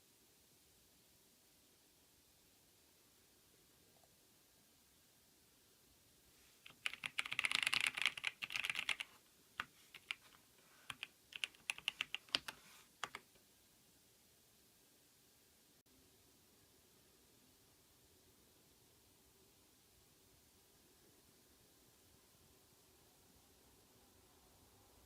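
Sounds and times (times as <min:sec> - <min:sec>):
mechanical keyboard typing: 0:06.7 - 0:13.3.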